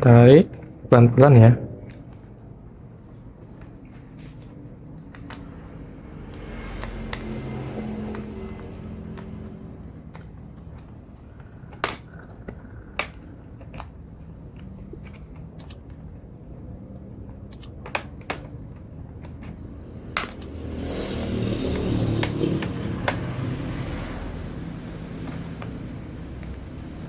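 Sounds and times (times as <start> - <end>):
hands rustling on laptop case: 1.9 - 19.8.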